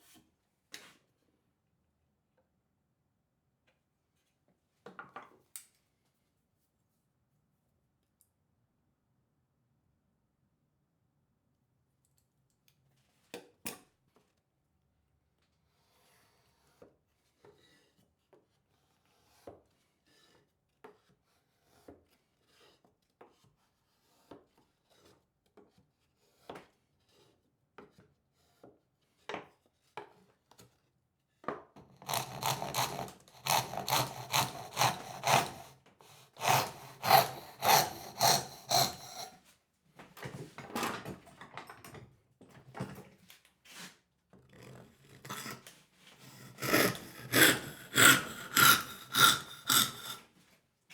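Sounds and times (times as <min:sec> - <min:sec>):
hand tool rasping wood: 0:31.8 - 0:39.4, 0:44.6 - 0:50.2.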